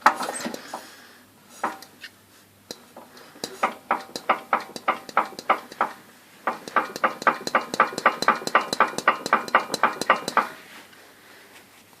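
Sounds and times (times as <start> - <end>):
engine knocking: 3.6 - 10.6.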